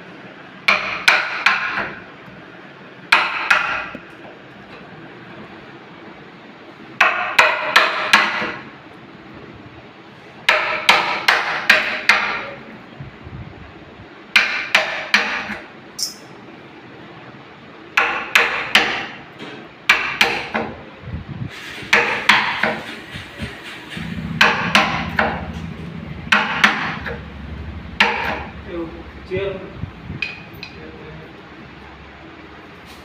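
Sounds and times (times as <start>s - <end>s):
hammer blows on wood: 21.8s - 28.8s.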